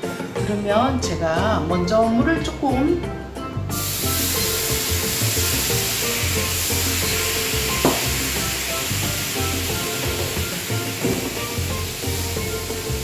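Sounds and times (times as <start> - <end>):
soft background music: 0.0 - 13.0
water sizzling on hot pan: 3.7 - 13.0
short knock: 7.8 - 8.1.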